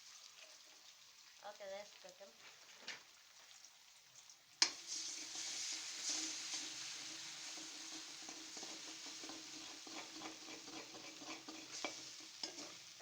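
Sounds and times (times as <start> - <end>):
food sizzling in hot oil: 0.0 - 13.0
oil popping and crackling: 2.0 - 13.0.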